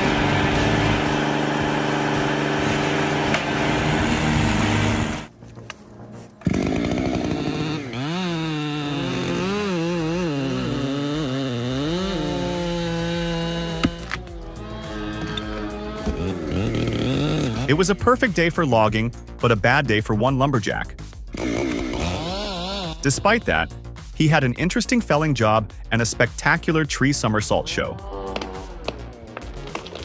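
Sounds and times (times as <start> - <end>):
cutting machine engine running: 0.0 - 5.3, 6.4 - 17.8, 21.4 - 23.1.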